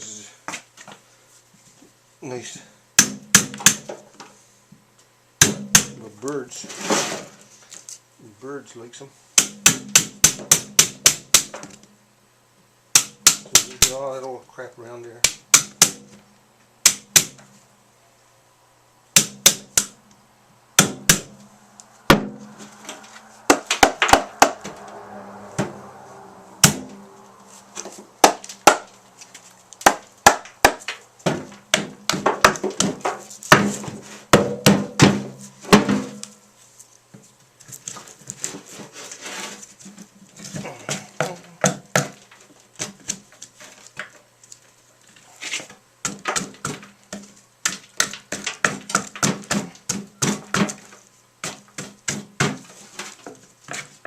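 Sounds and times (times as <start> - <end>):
hand tool scraping wood: 6.5 - 7.8, 37.6 - 44.1, 45.1 - 45.8, 49.4 - 54.0.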